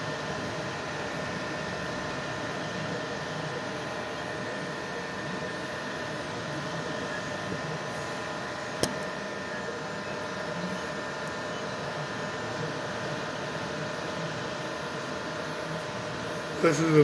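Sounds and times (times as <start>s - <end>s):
printer fans and motors humming: 0.0s - 17.0s
sharp click: 8.8s - 9.0s.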